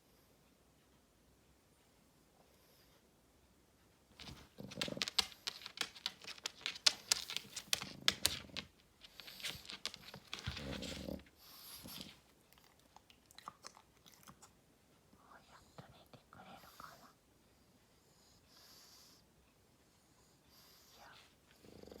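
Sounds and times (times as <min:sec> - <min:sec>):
soft rustling: 0:03.8 - 0:12.4
dog smacking its mouth: 0:04.2 - 0:11.1.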